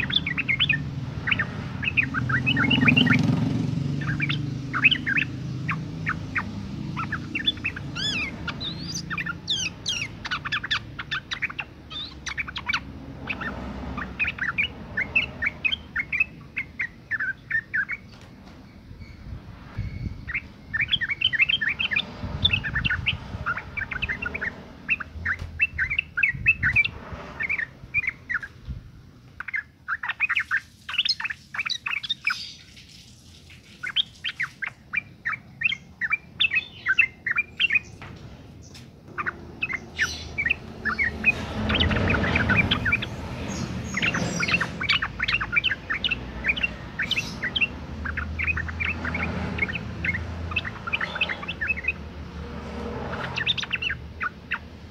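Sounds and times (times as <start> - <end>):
bird chattering call: 0.0 - 18.1, 19.8 - 28.6, 39.1 - 52.0, 53.0 - 54.9.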